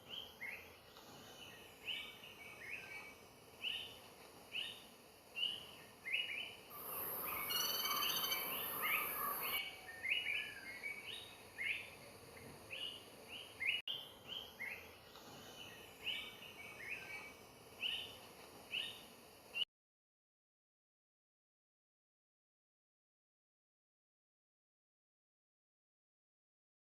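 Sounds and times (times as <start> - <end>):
hiss with high buzzing tone: 0.7 - 9.9
woodpecker calling: 6.8 - 9.8.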